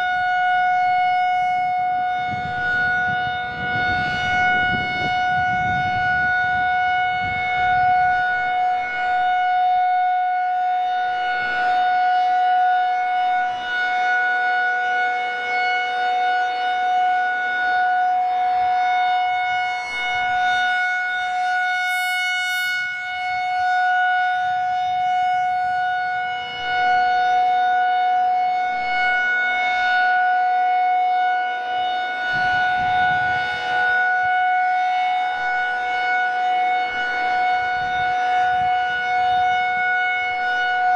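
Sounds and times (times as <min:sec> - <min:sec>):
rotating warning siren: 0:00.0 - 0:40.9
wind rumbling on microphone: 0:01.3 - 0:11.9, 0:32.2 - 0:40.9.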